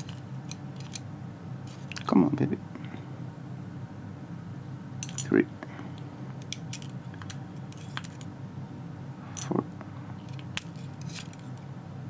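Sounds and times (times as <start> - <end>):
metal pins clicking: 0.0 - 1.0, 10.3 - 11.6.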